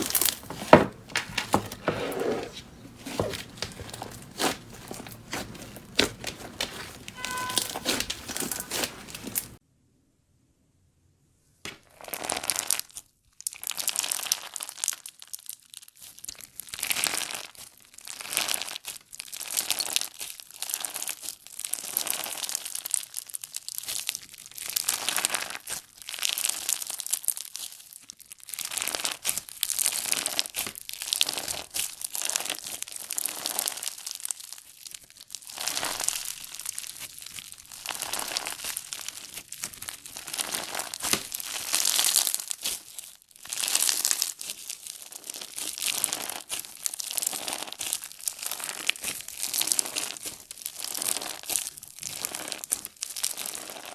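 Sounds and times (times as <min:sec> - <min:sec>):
crunchy slime squeezed by hand: 0:03.0 - 0:09.6, 0:35.4 - 0:53.9.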